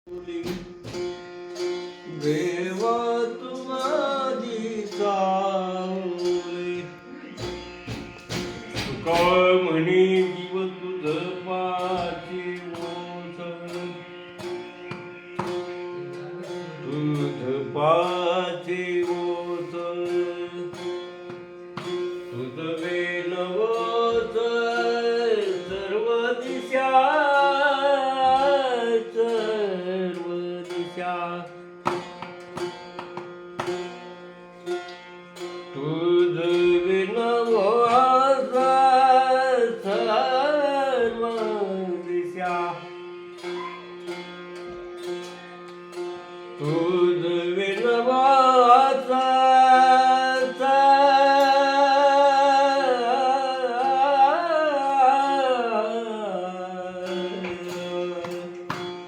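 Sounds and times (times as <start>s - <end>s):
person singing a long vowel: 2.1s - 7.4s, 22.3s - 31.5s, 46.6s - 59.0s
sharp drum strikes: 7.4s - 9.5s.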